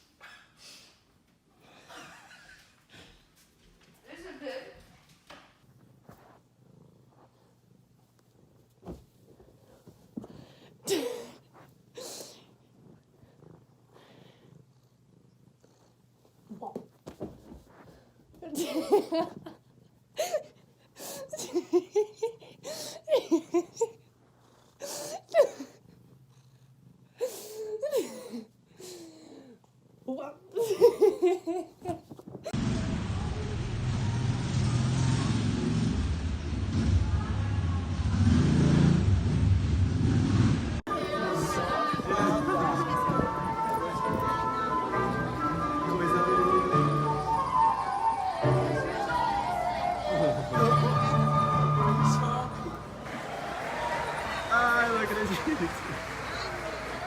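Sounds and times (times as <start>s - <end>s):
cat purring: 5.1s - 27.8s, 28.4s - 34.0s, 40.0s - 53.0s.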